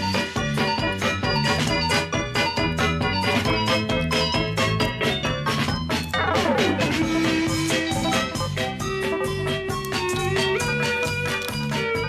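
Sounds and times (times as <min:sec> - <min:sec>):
upbeat keyboard and organ tune: 0:00.0 - 0:12.0.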